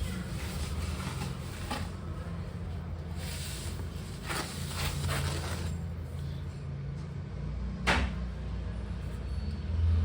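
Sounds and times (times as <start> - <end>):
plastic packaging rustling: 0.0 - 6.1.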